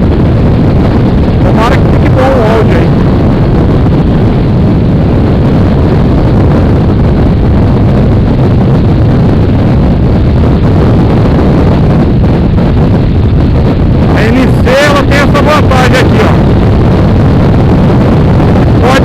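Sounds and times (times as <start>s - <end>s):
motorcycle engine drone: 0.0s - 19.0s
wind rush on microphone: 0.0s - 19.0s.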